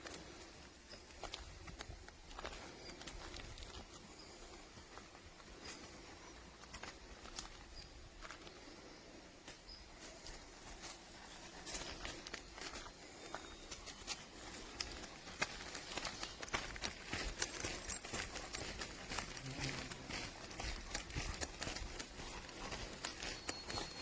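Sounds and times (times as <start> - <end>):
dog's footsteps tapping: 10.7 - 24.0.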